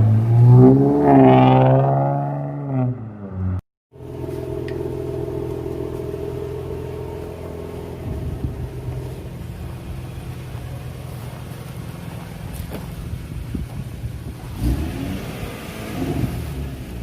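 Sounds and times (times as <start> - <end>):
car engine idling: 3.9 - 14.7.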